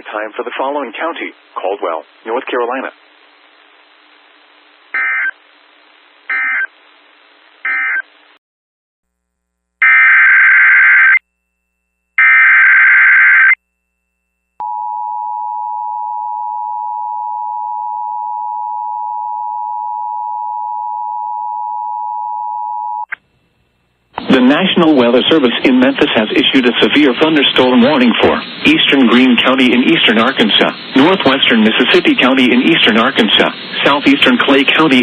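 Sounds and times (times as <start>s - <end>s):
radio hiss: 0.0s - 7.7s, 24.2s - 35.0s.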